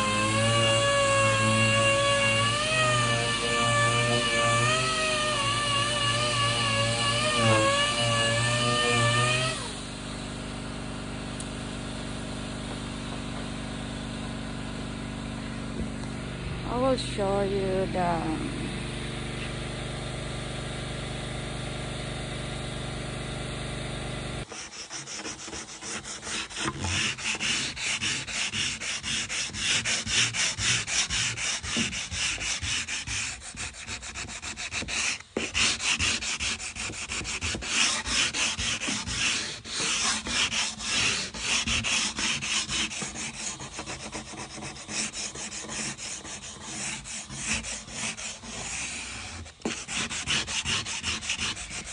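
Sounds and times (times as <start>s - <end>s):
sandpaper rubbing on wood: 0.0s - 9.7s, 24.4s - 51.9s
machine hum: 0.0s - 24.5s.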